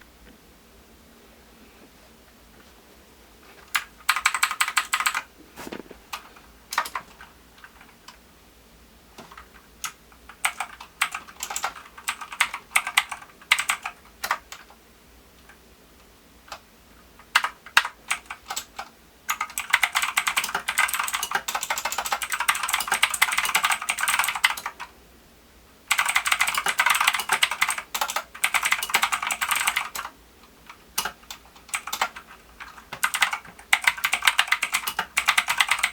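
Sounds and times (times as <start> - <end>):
mechanical keyboard typing: 3.7 - 8.2, 9.2 - 14.7, 17.2 - 24.9, 25.9 - 30.1, 31.0 - 35.9.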